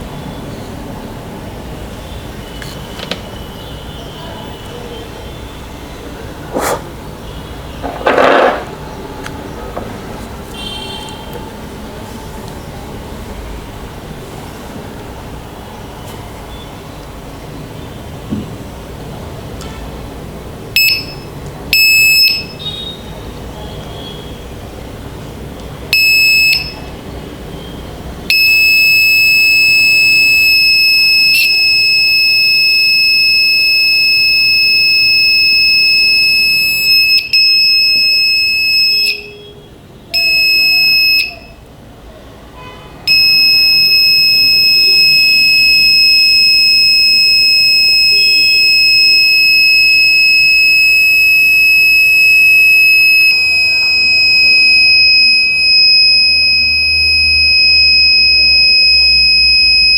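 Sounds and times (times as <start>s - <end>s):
high-pitched buzzer alarm tone: 20.8s - 23.0s, 25.9s - 26.9s, 28.3s - 39.5s, 40.2s - 41.5s, 43.1s - 59.9s.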